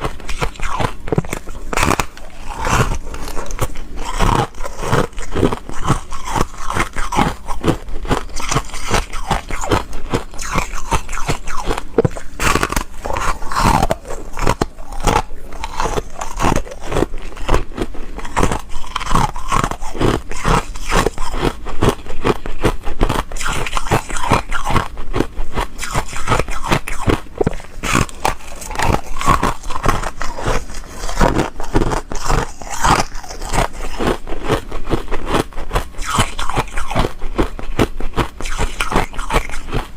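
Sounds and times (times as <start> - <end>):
chewing crunchy ice: 0.0 - 39.9.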